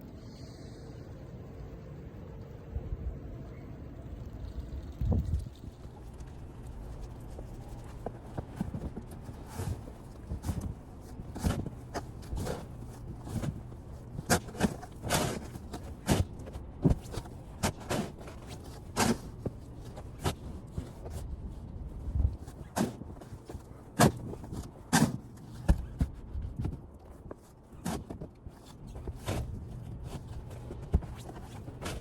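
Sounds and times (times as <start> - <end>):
footsteps in snow: 6.6 - 32.0.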